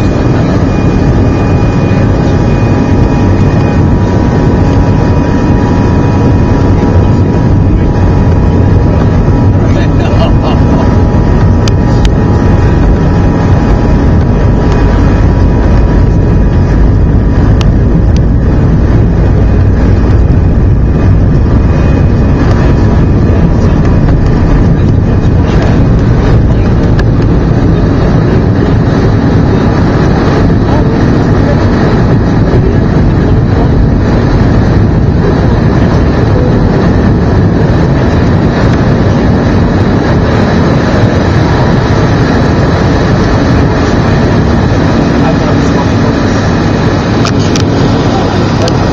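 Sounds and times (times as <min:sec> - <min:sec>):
airplane cabin engine rumble: 0:00.0 - 0:48.9.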